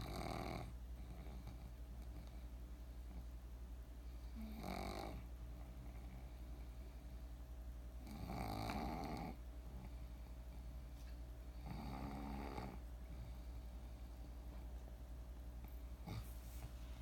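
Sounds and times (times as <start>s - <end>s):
person snoring: 11.6s - 12.8s.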